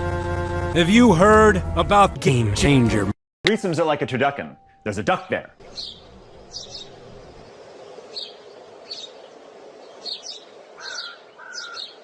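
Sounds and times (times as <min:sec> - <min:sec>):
small birds chirping: 0:05.4 - 0:12.0.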